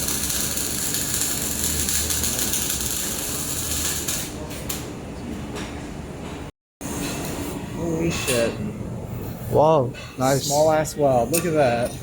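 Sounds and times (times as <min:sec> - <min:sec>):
laser welder hissing: 0:00.0 - 0:04.2.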